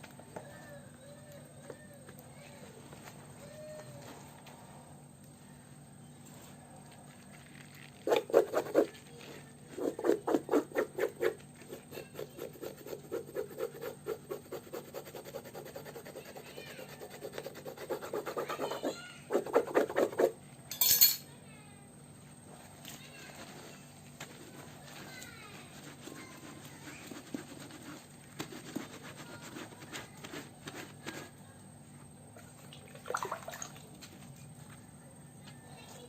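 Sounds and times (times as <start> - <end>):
rhythmic rubbing strokes: 8.0 - 20.4, 23.4 - 31.4.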